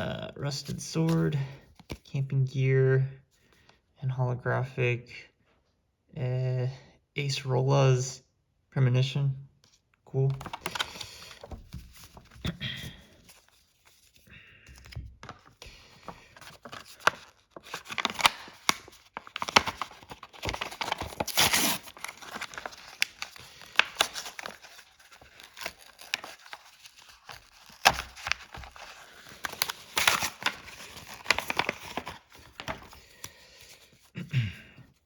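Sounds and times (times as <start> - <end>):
foil wrapper crinkling and tearing: 10.3 - 12.4, 15.8 - 34.0.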